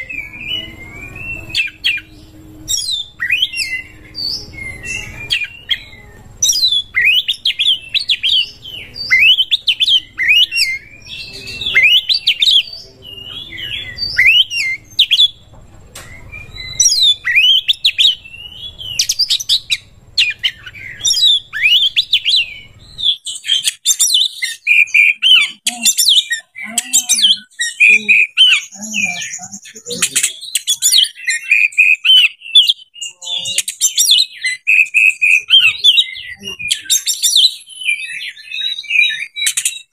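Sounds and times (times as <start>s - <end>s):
bird singing whistled phrases: 0.0s - 15.4s, 16.0s - 39.9s
low background hum: 0.0s - 31.1s.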